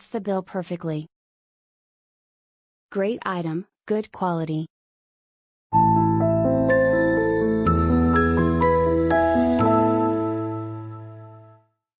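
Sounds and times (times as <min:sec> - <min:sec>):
gentle keyboard melody: 0:05.8 - 0:11.6.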